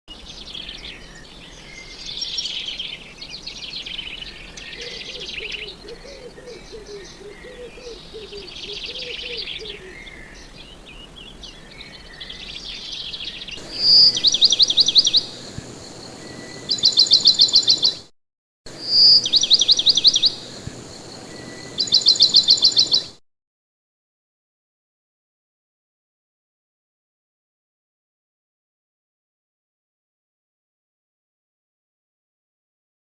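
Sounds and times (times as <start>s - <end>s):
small songbirds chirping: 0.1s - 18.1s, 18.7s - 23.2s
loud fast bird trills: 13.2s - 18.1s, 18.8s - 20.6s.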